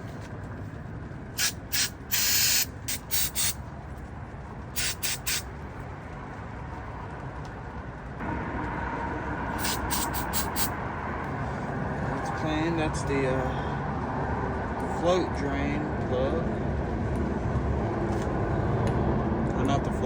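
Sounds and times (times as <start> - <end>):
spray can hissing squirts: 1.4 - 3.6, 4.8 - 5.5, 9.6 - 10.7.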